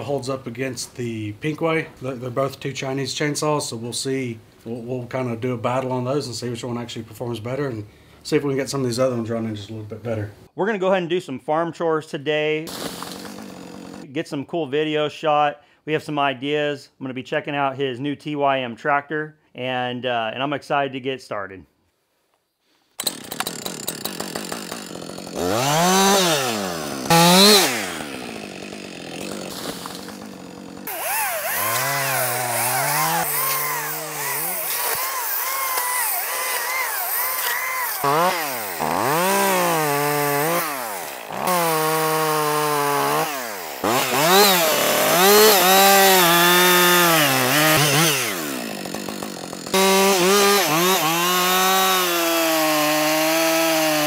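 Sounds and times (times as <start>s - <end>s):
chainsaw engine revving: 12.7s - 14.1s, 23.0s - 54.0s.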